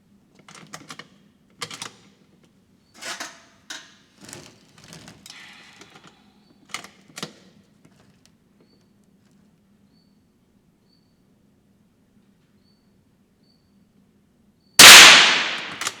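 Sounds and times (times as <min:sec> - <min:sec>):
rifle action metallic clicks: 0:14.8 - 0:16.0.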